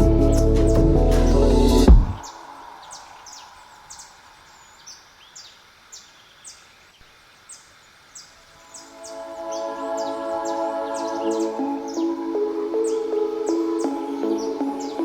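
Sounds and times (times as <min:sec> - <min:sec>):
soft music: 0:00.0 - 0:02.3, 0:08.7 - 0:15.0
bird chirping: 0:00.0 - 0:15.0
faint steady hiss: 0:02.2 - 0:15.0.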